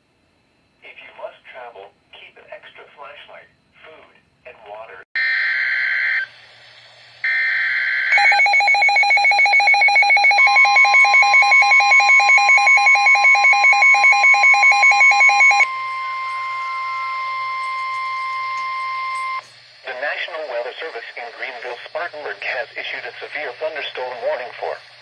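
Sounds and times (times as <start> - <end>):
screeching data bursts: 7.2 - 24.9
steady warning alarm tone: 7.2 - 25.0
rapid pulsing alert beeps: 8.1 - 19.4.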